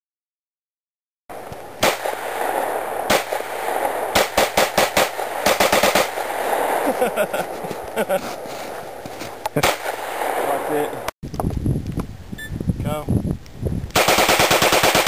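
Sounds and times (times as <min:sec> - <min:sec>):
pistol shots: 0:01.8 - 0:06.9, 0:09.6 - 0:10.9, 0:14.0 - 0:15.0.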